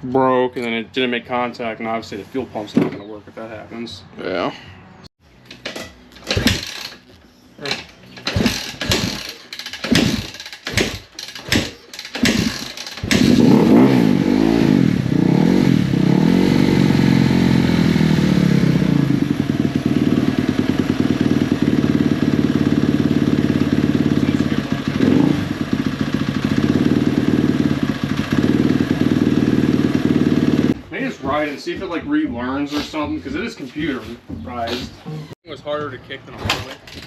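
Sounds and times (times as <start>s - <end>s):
motorcycle kick-start strokes: 5.4s - 30.8s
motorcycle engine revving and idling: 6.2s - 7.0s, 7.6s - 30.8s.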